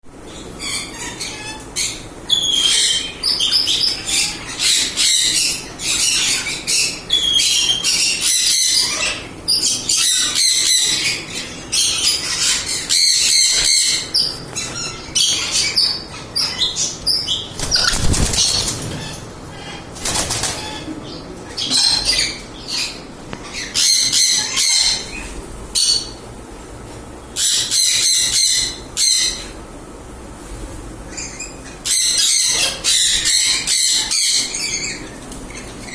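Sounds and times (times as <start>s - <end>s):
parrot squawking: 0.6s - 20.9s.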